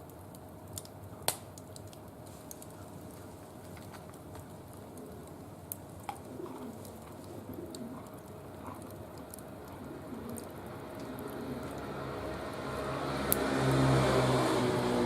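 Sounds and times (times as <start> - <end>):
wood fire snapping and popping: 0.0 - 14.1
dove cooing: 6.1 - 12.4.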